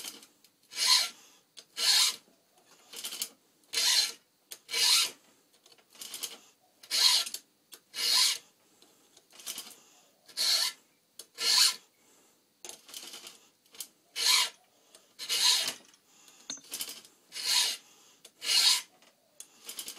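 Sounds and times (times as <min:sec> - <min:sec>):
file rasping on chainsaw chain: 0:00.7 - 0:01.2, 0:10.4 - 0:10.8, 0:11.4 - 0:11.8, 0:14.2 - 0:14.6, 0:17.3 - 0:17.8, 0:18.4 - 0:18.9.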